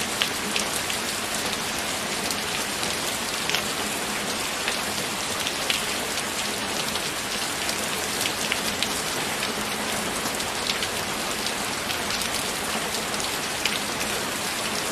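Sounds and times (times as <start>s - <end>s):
raindrops pattering on a surface: 0.0s - 14.9s
steady rain hiss: 0.0s - 14.9s.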